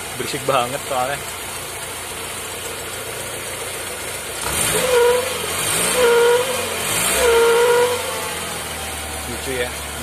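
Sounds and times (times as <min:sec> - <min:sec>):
car engine idling: 0:00.0 - 0:10.0
honking tone from engine hose: 0:04.5 - 0:08.3.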